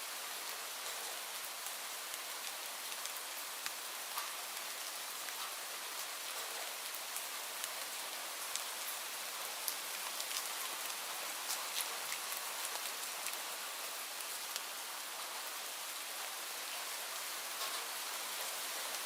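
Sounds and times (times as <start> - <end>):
light rain hiss: 0.0 - 19.0
rain drops ticking: 0.1 - 19.0.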